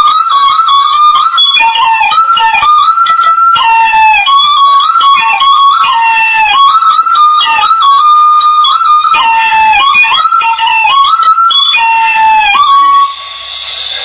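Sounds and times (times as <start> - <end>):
bamboo free-reed pipe melody: 0.0 - 14.0
steady hiss: 0.0 - 14.0.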